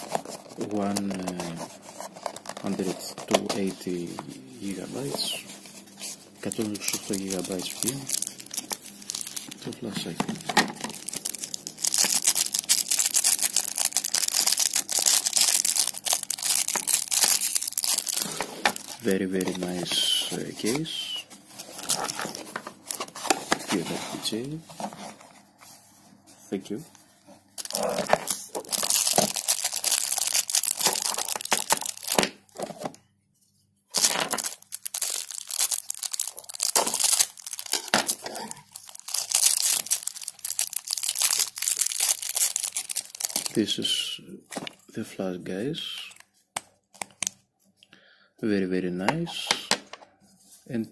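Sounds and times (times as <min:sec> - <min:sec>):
plastic packaging crinkling: 0:00.0 - 0:25.3, 0:27.6 - 0:33.0, 0:33.9 - 0:43.9.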